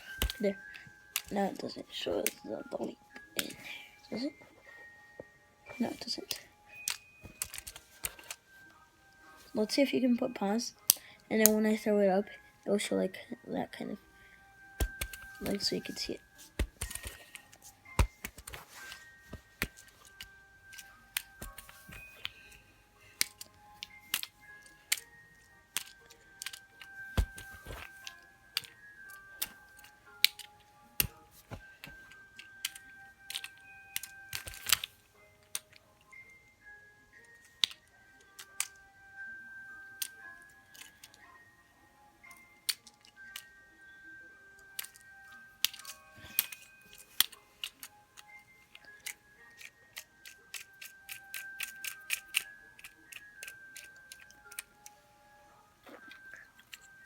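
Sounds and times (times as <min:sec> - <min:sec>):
fidget cube clicking: 0:00.0 - 0:02.8, 0:06.3 - 0:08.4, 0:14.8 - 0:22.4, 0:23.2 - 0:31.2, 0:31.8 - 0:35.8, 0:37.2 - 0:38.8, 0:39.9 - 0:41.2, 0:44.6 - 0:54.9
faint background music: 0:00.0 - 0:57.0.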